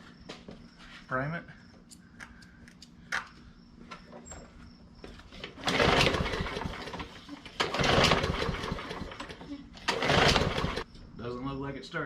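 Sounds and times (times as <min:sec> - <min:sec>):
recoil starter pulled: 0:05.4 - 0:10.8
engine cranking: 0:05.4 - 0:10.9.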